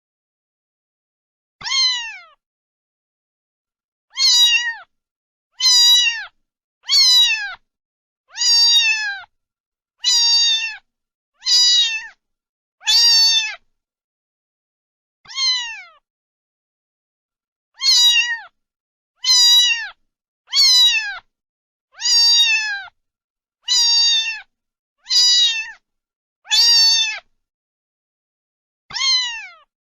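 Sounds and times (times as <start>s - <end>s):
cat meowing: 1.6s - 2.4s, 4.1s - 4.9s, 5.6s - 7.6s, 8.3s - 9.3s, 10.0s - 12.2s, 12.8s - 13.6s, 15.3s - 16.0s, 17.8s - 18.6s, 19.2s - 21.3s, 22.0s - 23.0s, 23.6s - 25.8s, 26.5s - 27.3s, 28.9s - 29.7s.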